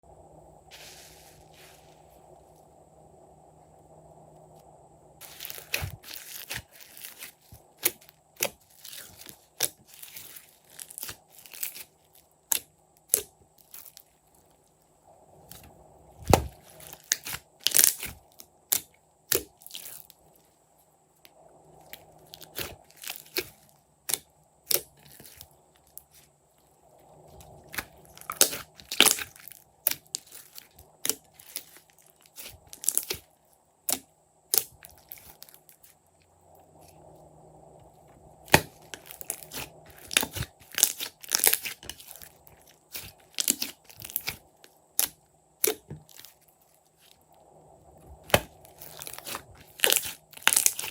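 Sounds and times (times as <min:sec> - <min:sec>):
faint steady hum: 0:00.0 - 0:50.9
slime crackling and popping: 0:05.2 - 0:14.1, 0:15.5 - 0:20.1, 0:22.3 - 0:26.1, 0:27.4 - 0:33.3, 0:33.9 - 0:35.8, 0:38.4 - 0:44.4, 0:45.0 - 0:46.4, 0:48.2 - 0:50.9.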